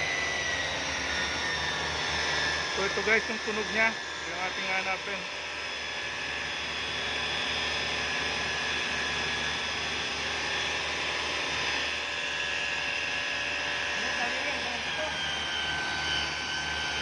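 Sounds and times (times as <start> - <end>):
car engine humming whine: 0.0 - 17.0.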